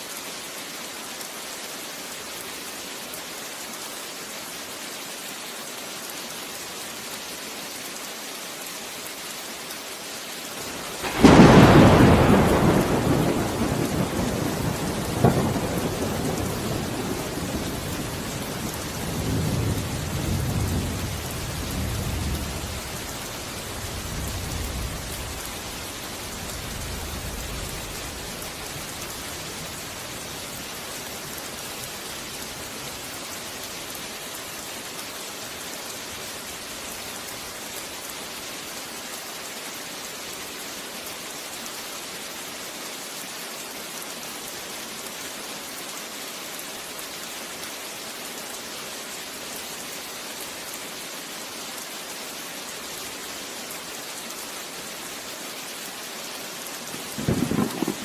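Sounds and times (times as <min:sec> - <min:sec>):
rain pouring: 0:00.0 - 0:58.0
thunder rumbling: 0:10.9 - 0:23.0, 0:57.0 - 0:58.0.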